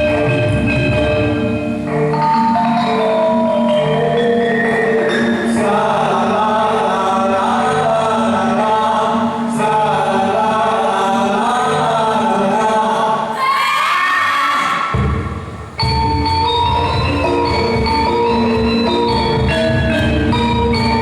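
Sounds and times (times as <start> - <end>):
sustained instrumental tones: 0.0 - 12.6, 15.0 - 21.0
voices chanting together: 5.3 - 15.4.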